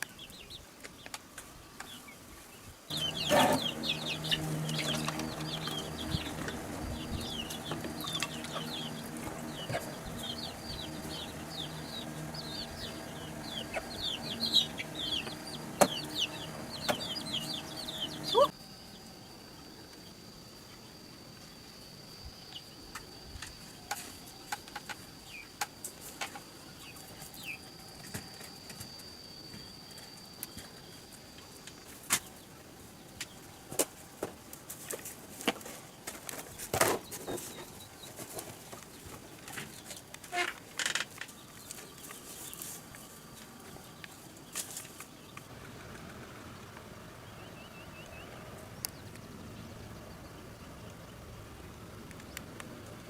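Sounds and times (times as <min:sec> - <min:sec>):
short bird calls: 0:02.9 - 0:18.5
high insect drone: 0:02.9 - 0:35.4, 0:36.6 - 0:53.0.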